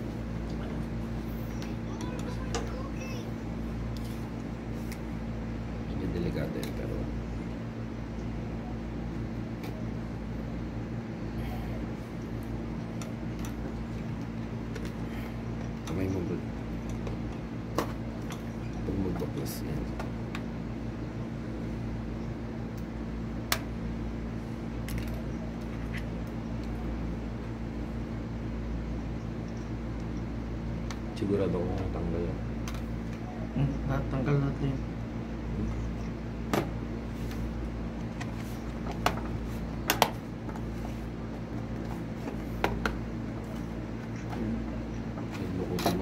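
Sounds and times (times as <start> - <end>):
steady low hum: 0.0 - 46.0.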